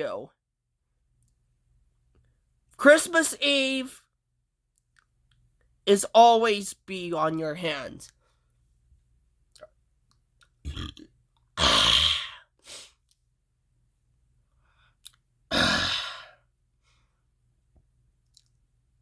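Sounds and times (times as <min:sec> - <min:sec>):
person exhaling hard: 0:15.5 - 0:16.4.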